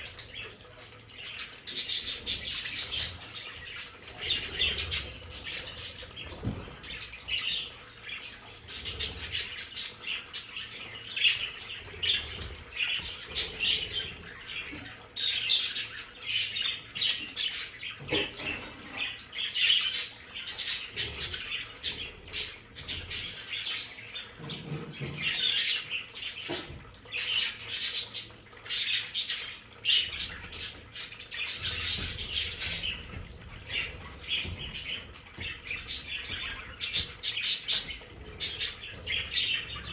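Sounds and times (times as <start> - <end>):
budgies chattering: 0.0 - 39.9.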